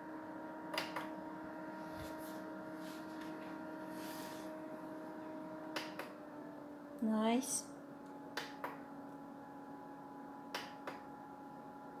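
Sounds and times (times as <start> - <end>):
fan whine: 0.0 - 12.0.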